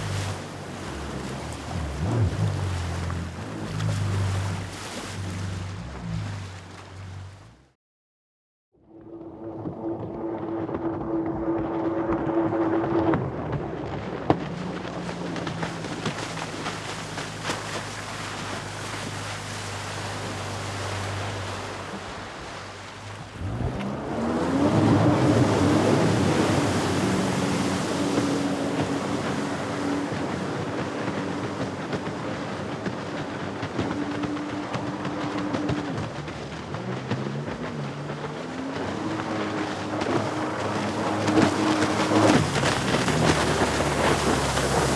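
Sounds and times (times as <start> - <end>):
water spray rushing: 0.0 - 6.6, 40.6 - 44.9
jet ski engine whining: 0.0 - 7.7, 8.9 - 44.9
wind: 0.0 - 7.8, 8.8 - 44.9.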